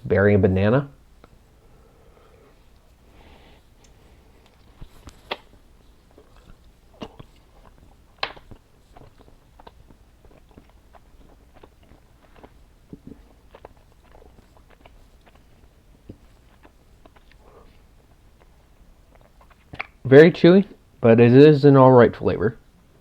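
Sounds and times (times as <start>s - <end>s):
mouth chewing candy: 3.6s - 20.0s.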